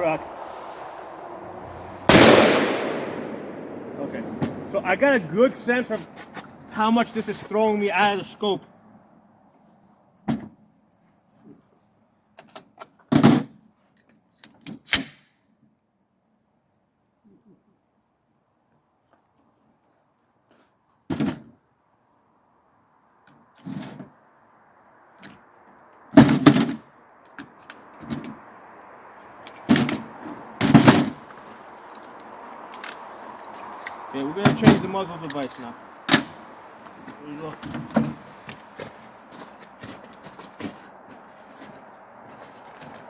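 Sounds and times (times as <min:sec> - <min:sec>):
loud short bangs: 0:02.1 - 0:04.8.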